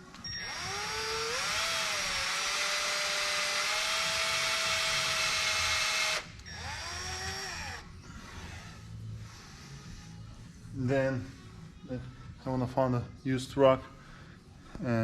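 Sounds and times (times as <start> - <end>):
power drill whining: 0.0 - 8.6.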